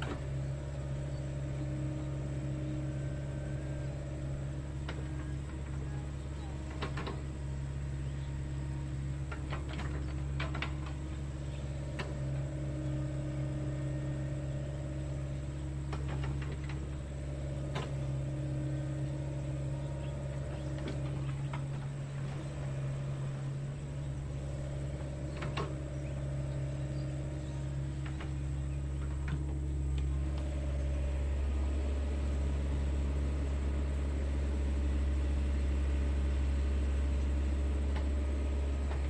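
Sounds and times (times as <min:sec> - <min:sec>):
excavator engine humming: 0:00.0 - 0:39.0
machine knocks and clicks: 0:24.7 - 0:26.3.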